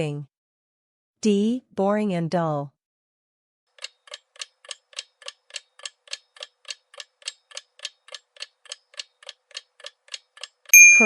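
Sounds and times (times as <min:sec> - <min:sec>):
clock ticking: 0:03.7 - 0:10.7.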